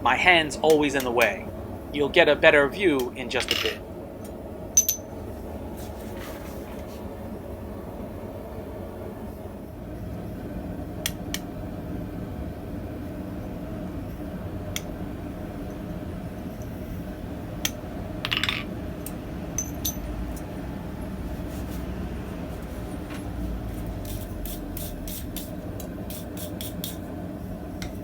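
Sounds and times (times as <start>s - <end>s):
steel tools clinking: 4.8s - 5.0s, 19.6s - 20.4s.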